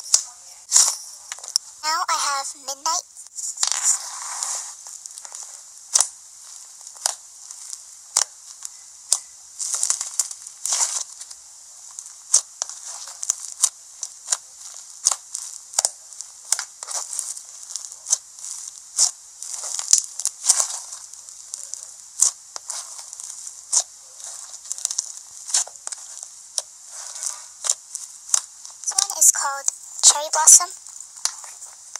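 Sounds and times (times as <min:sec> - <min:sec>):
slime popping and crackling: 0:00.0 - 0:01.8, 0:03.2 - 0:31.9
faint hiss: 0:00.0 - 0:31.9.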